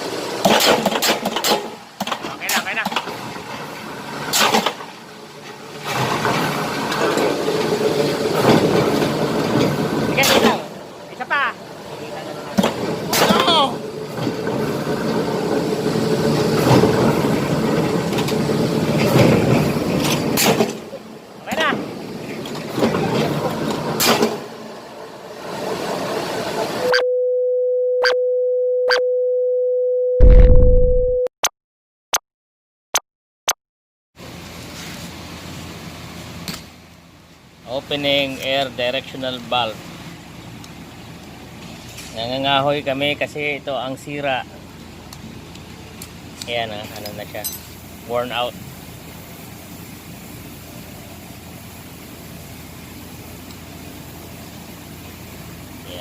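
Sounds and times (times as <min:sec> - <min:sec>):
shop noise with clicks and knocks: 0:00.4 - 0:03.5, 0:04.3 - 0:10.7, 0:12.6 - 0:13.6, 0:19.0 - 0:20.9, 0:22.4 - 0:24.4
steady electronic beep tone: 0:26.9 - 0:31.3
loud low thud: 0:30.2 - 0:31.2.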